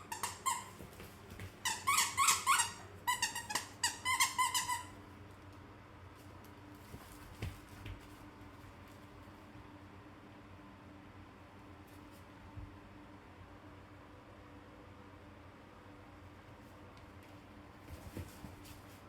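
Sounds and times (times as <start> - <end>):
squeaky dog toy: 0.0 - 0.8, 1.6 - 5.0.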